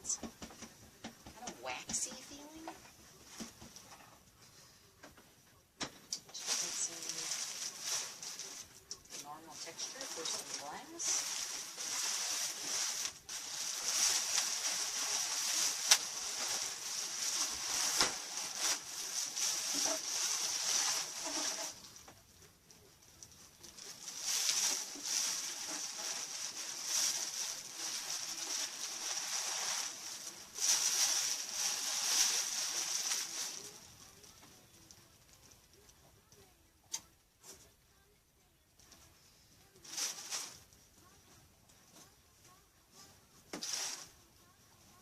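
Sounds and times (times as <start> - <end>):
packing material rustling: 6.3 - 22.1, 22.8 - 35.8, 39.6 - 41.2, 43.0 - 44.4.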